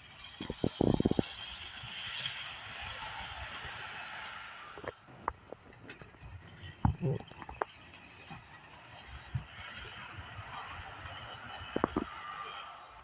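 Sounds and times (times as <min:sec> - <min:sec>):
model train running hiss: 0:00.0 - 0:05.0, 0:07.9 - 0:13.0
loud clicks of model train: 0:00.0 - 0:12.2.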